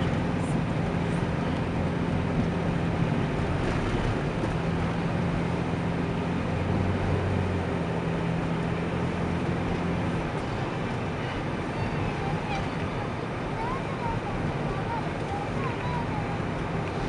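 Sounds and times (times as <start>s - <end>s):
car engine hum and tyre noise: 0.0s - 17.0s.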